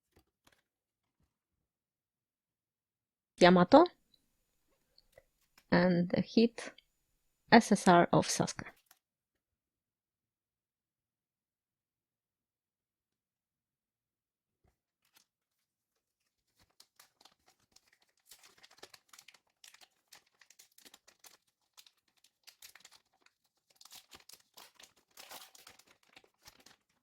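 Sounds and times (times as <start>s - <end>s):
plastic wrapper tearing and crinkling: 15.0s - 15.3s, 16.1s - 27.0s.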